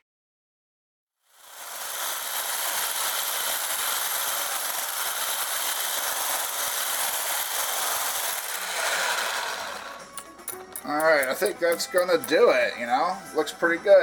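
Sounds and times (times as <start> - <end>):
electric mixer whipping: 1.4 - 12.3.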